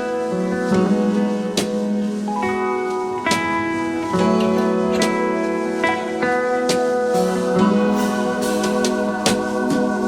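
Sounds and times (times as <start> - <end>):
held music chords: 0.0 - 10.0
light percussion hits: 6.7 - 10.0.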